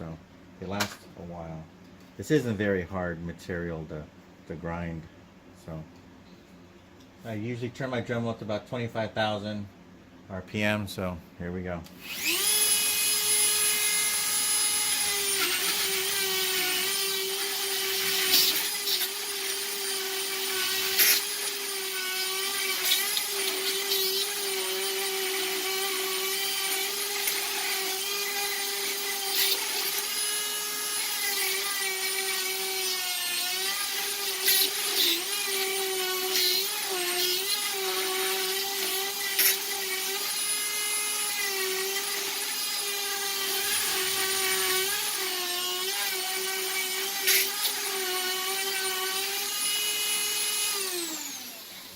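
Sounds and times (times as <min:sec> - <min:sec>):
rotary tool grinding whine: 0:12.0 - 0:51.9.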